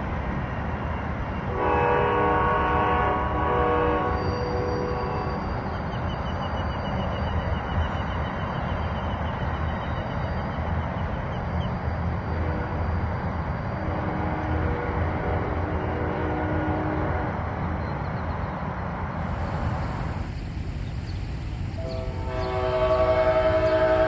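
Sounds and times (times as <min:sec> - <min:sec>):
distant train horn: 0:01.4 - 0:06.1, 0:12.0 - 0:18.0, 0:21.7 - 0:24.0.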